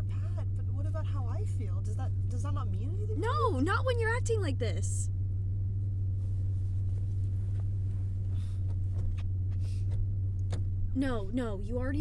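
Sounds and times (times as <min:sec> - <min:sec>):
car engine and road noise: 0:00.0 - 0:12.0
soft rustles: 0:05.7 - 0:10.8.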